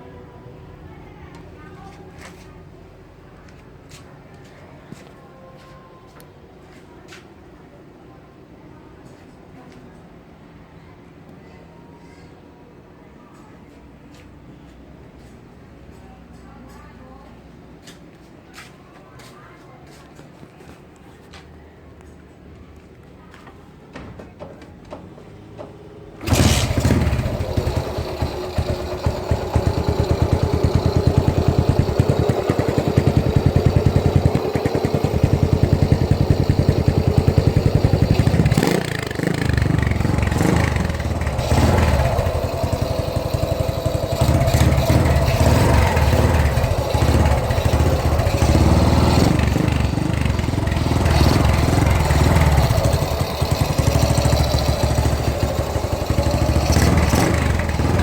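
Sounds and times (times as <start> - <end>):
motorcycle engine running: 26.2 - 58.0.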